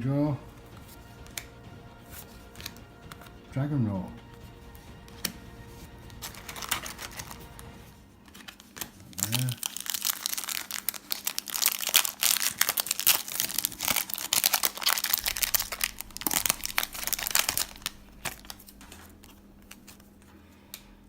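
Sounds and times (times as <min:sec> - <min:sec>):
foil wrapper crinkling and tearing: 0:06.2 - 0:20.1.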